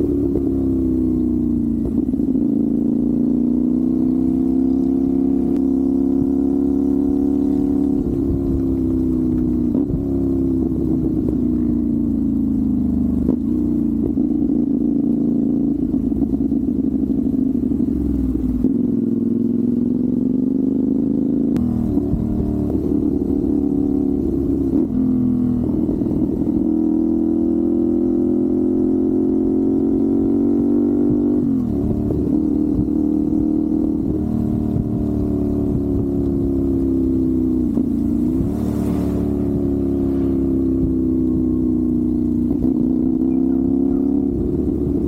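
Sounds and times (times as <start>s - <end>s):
motorcycle engine shifting gears: 0.0s - 45.0s
wind rumble on microphone: 5.6s - 12.2s, 30.9s - 45.0s.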